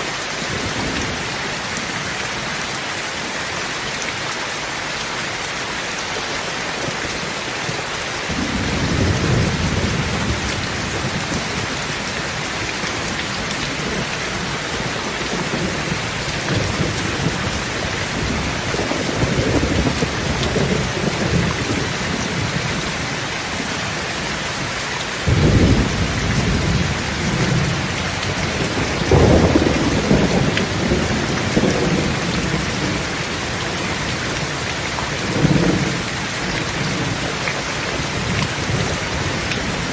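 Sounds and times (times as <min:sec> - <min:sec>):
rain hissing: 0:00.0 - 0:39.9
rolling thunder: 0:08.3 - 0:22.8, 0:25.3 - 0:37.4.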